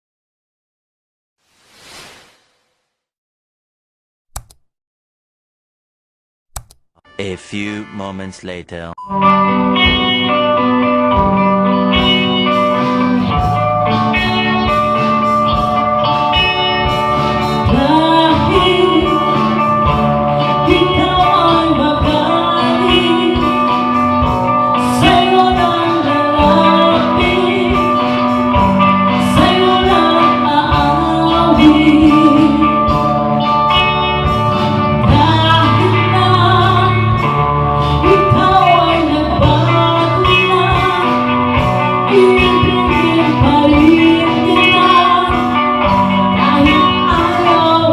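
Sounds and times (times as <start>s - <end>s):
band playing: 7.0s - 30.1s
person singing: 7.1s - 9.0s.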